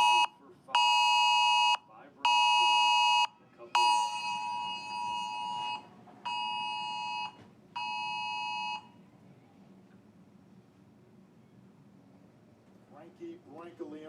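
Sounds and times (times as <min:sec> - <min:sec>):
harsh two-tone alert beep: 0:00.0 - 0:08.8.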